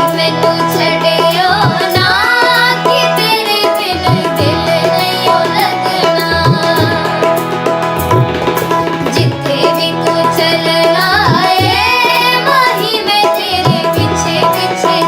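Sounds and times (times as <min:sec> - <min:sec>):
ornamented sliding melody: 0:00.0 - 0:15.0
drum strokes: 0:06.2 - 0:10.2.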